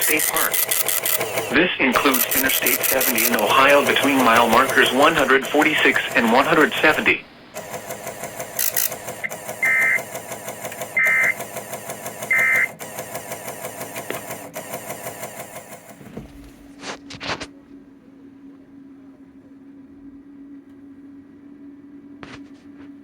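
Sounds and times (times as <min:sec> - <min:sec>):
low hum: 0:00.0 - 0:12.8, 0:15.8 - 0:23.0
sharp clicks: 0:00.0 - 0:15.8
rhythmic ticking: 0:00.0 - 0:16.0
shrill warbling digital tones: 0:09.2 - 0:10.1, 0:10.9 - 0:11.4, 0:12.3 - 0:12.7.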